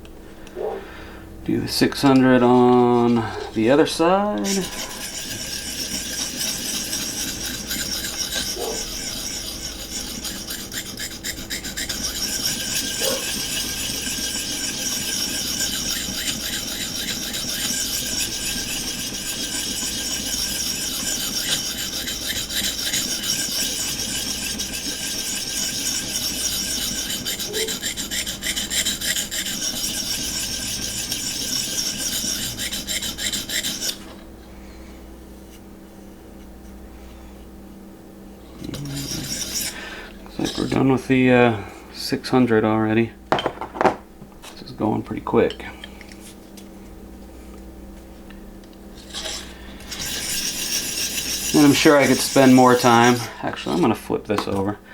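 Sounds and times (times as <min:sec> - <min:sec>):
knife sharpening strokes: 0:04.3 - 0:34.0, 0:38.6 - 0:39.8, 0:49.0 - 0:53.3.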